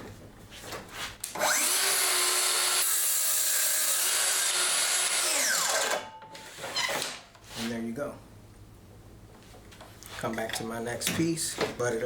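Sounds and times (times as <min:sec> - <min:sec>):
track saw cutting a board: 0:01.3 - 0:06.1.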